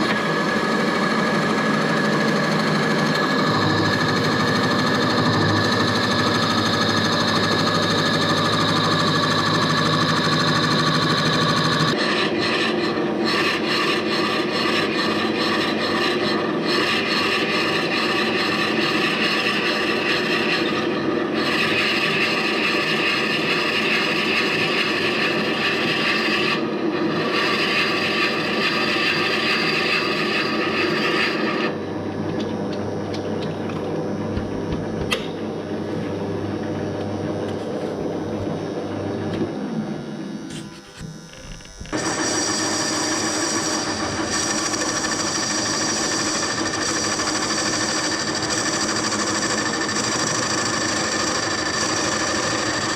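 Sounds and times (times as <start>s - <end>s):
lathe running: 0.0s - 52.9s.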